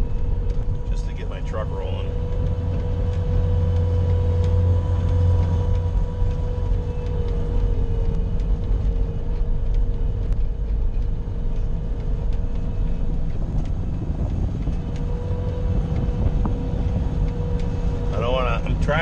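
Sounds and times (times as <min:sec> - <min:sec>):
engine whine: 0:00.0 - 0:19.0
loader engine rumbling: 0:00.0 - 0:19.0.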